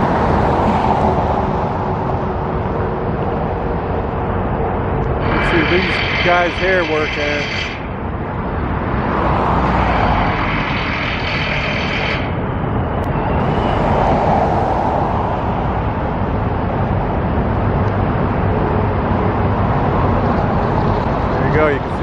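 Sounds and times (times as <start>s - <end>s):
high whine: 0.0s - 22.0s
road traffic rumble: 0.0s - 22.0s.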